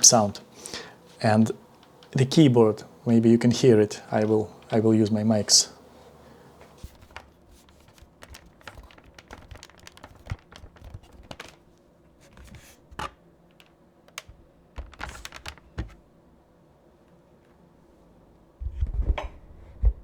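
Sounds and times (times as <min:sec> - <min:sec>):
keyboard keys clicking: 0:07.0 - 0:11.6, 0:13.5 - 0:16.0.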